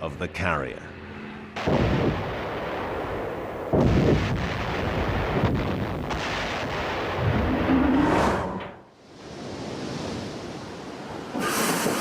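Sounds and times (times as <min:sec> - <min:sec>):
continuous rumble: 0:00.0 - 0:08.9
heavy booms: 0:01.6 - 0:08.4.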